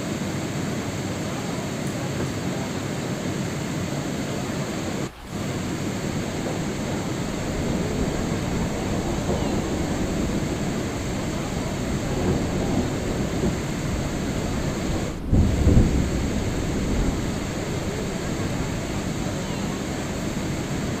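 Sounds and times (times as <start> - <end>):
steady rain: 0.0 - 21.0
low thunder-like rumble: 4.9 - 21.0.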